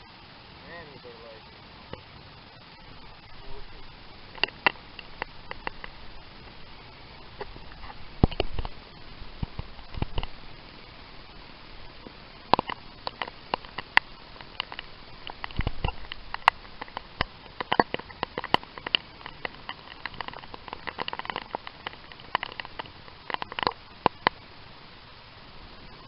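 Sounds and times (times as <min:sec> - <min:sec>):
faint hiss: 0:00.0 - 0:26.0
raindrops tapping on hard surface: 0:04.2 - 0:10.5, 0:11.8 - 0:24.4.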